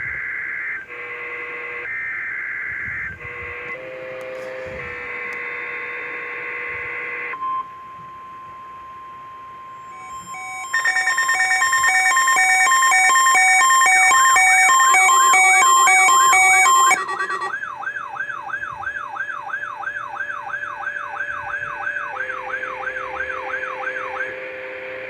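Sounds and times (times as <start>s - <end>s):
steady warning tone: 7.4s - 17.7s
rapidly pulsing electronic alarm beeps: 9.7s - 18.7s
warbling siren-like note: 9.8s - 19.0s
screeching digital header bursts: 9.9s - 17.6s.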